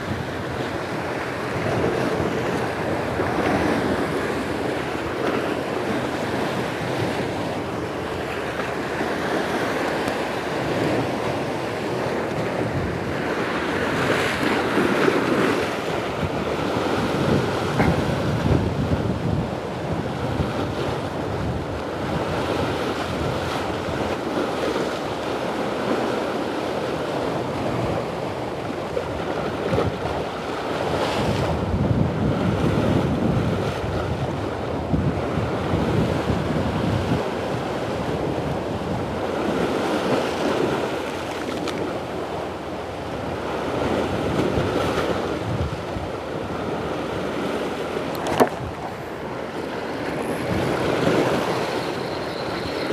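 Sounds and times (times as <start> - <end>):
waves breaking on rocks: 0.0 - 52.9
wind buffeting microphone: 0.0 - 52.9.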